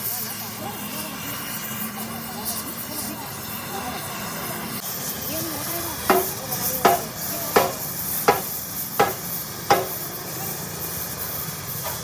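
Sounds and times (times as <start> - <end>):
knocks with short ring: 6.1 - 10.0.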